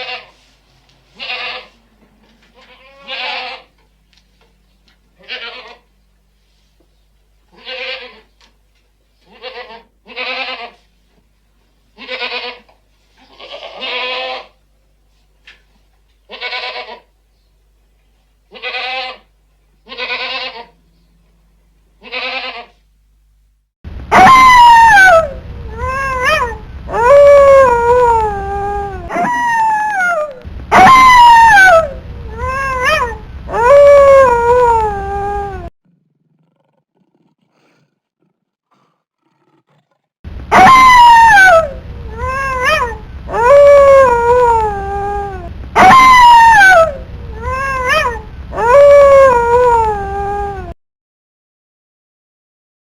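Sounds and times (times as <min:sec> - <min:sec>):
goat bleating: 0:00.0 - 0:00.3, 0:01.2 - 0:01.7, 0:02.6 - 0:03.7, 0:05.2 - 0:05.8, 0:07.5 - 0:08.3, 0:09.3 - 0:10.8, 0:12.0 - 0:14.5, 0:16.3 - 0:17.1, 0:18.5 - 0:19.2, 0:19.9 - 0:20.8, 0:22.0 - 0:22.8
cat meowing loudly: 0:24.1 - 0:35.7, 0:40.5 - 0:50.8.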